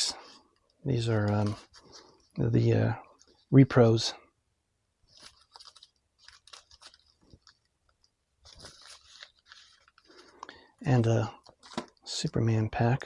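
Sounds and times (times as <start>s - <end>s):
paper crinkling and rustling: 1.1s - 2.4s, 5.1s - 10.7s.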